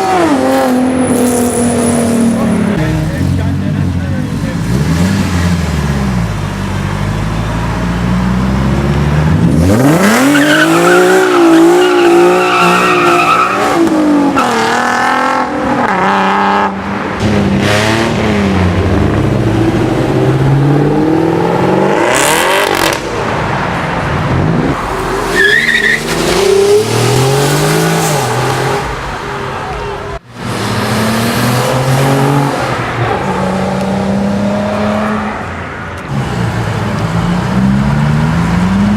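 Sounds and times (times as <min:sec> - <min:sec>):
car engines revving: 0:00.0 - 0:38.9
cars passing: 0:00.0 - 0:38.9
tyres squealing and skidding: 0:09.8 - 0:14.8, 0:24.8 - 0:30.2.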